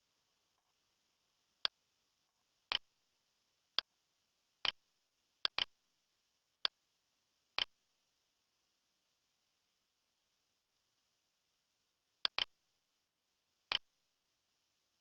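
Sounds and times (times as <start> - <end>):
faint steady hiss: 0.0 - 15.0.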